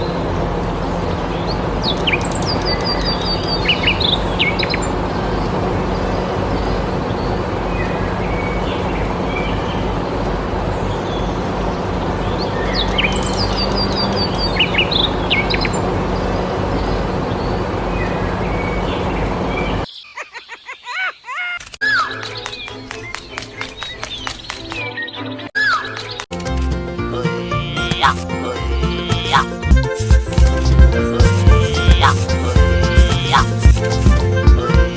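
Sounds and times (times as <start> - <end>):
songbird chirping: 0.0 - 26.3.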